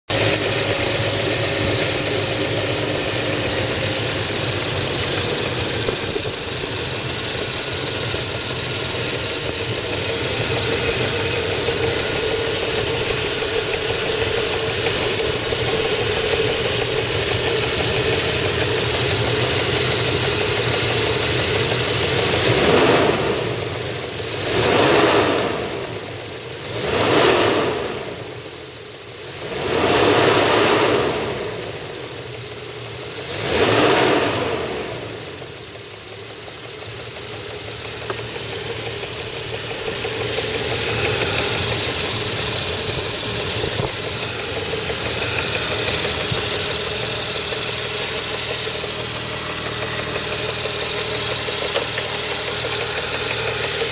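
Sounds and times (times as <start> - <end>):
engine running: 0.0 - 53.9
engine revving: 0.1 - 28.4, 29.2 - 32.0, 33.1 - 35.4, 37.1 - 53.9.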